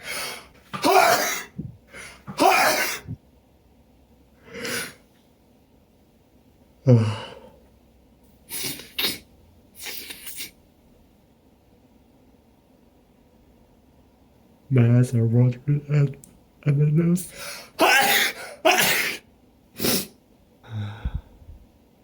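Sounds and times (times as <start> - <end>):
person sneezing: 0.7 - 3.2, 8.5 - 10.6, 17.7 - 19.2, 19.8 - 20.2
sharp breaths and sniffs: 8.5 - 10.6.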